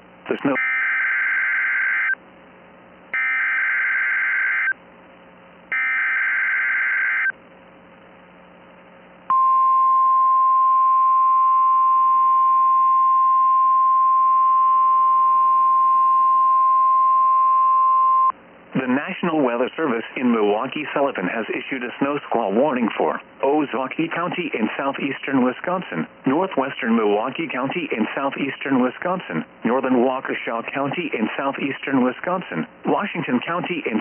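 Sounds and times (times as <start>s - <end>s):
steady warning alarm tone: 0.5s - 2.2s, 3.2s - 4.8s, 5.7s - 7.3s.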